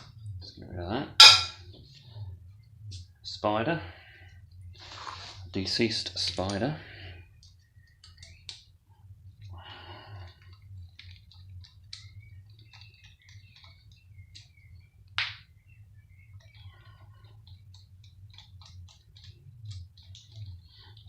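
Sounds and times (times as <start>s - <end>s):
low steady hum: 0.0s - 21.0s
sharp knock: 1.2s - 1.6s.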